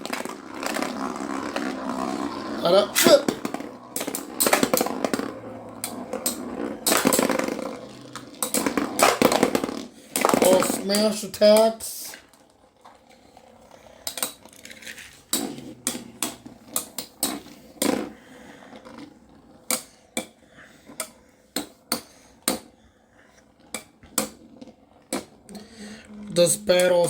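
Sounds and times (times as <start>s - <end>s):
spinning tops scraping: 0.0s - 19.9s, 25.4s - 27.0s.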